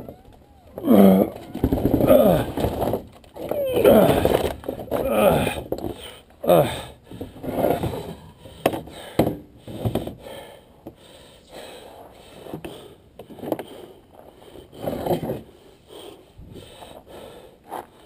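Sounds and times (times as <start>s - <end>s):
objects scraping: 0.0s - 6.2s, 7.1s - 9.0s
objects knocking: 0.8s - 6.0s.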